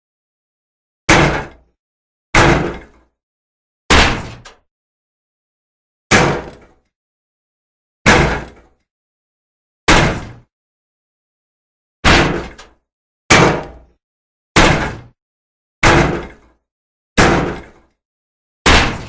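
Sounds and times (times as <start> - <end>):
shield being struck: 3.9 - 4.5, 12.1 - 12.6, 14.6 - 15.1, 18.7 - 19.0.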